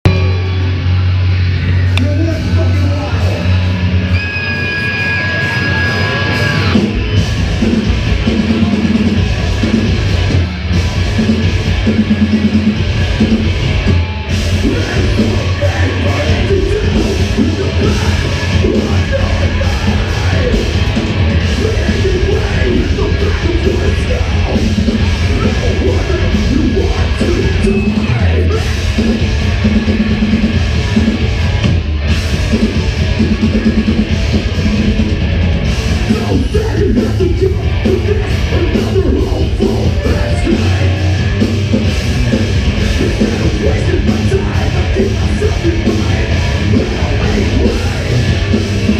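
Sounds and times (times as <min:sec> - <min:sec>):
rock band playing live: 0:00.0 - 0:48.9
person singing: 0:36.0 - 0:41.1, 0:42.9 - 0:48.4.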